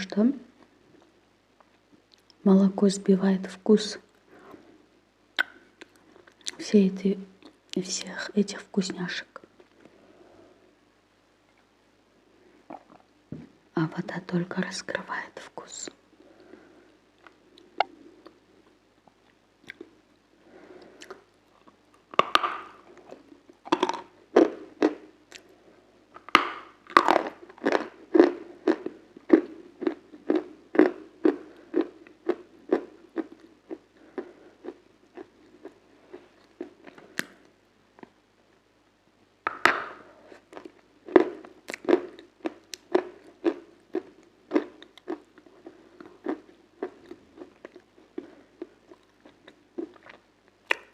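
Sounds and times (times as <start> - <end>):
chewing crunchy food: 17.2 - 20.0, 20.8 - 25.6, 26.2 - 38.2, 40.3 - 50.9.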